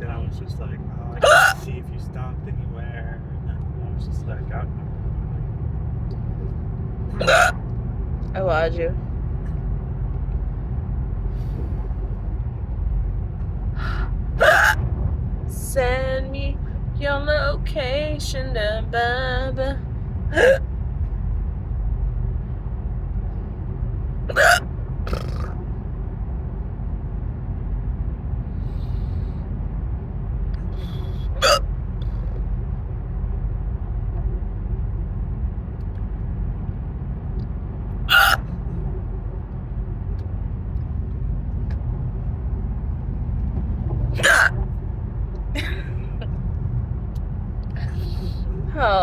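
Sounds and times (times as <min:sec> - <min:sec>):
road rumble inside car: 0:00.0 - 0:49.0
woman hiccuping: 0:01.2 - 0:01.6, 0:07.2 - 0:07.6, 0:14.4 - 0:14.8, 0:20.3 - 0:20.6, 0:24.3 - 0:25.4, 0:31.4 - 0:31.6, 0:38.1 - 0:38.4, 0:44.2 - 0:44.5.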